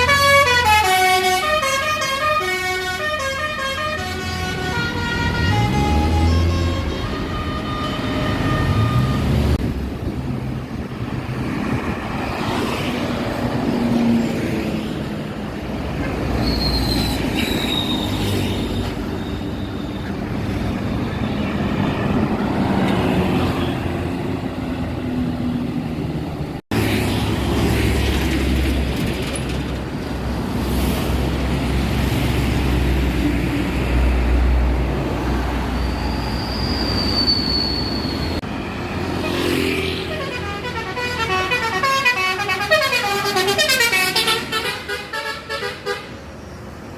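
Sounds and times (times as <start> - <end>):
heavy road traffic: 0.0 - 46.9
high squeal sliding down: 16.2 - 20.1, 35.4 - 38.4.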